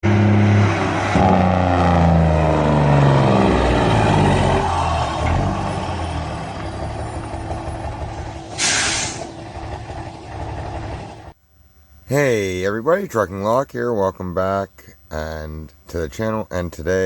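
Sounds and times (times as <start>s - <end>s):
truck engine running: 0.0s - 11.4s
air brakes hissing: 8.2s - 9.4s.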